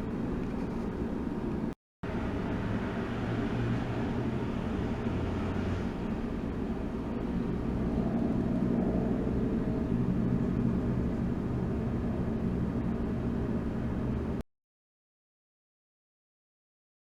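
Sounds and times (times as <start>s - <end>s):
low machine hum: 5.9s - 14.4s.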